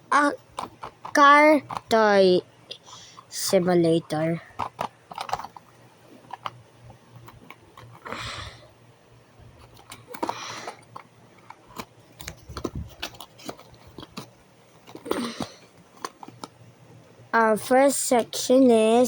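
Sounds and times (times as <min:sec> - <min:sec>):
plastic toys clicking: 0:00.3 - 0:02.0, 0:04.1 - 0:06.6, 0:09.6 - 0:16.5.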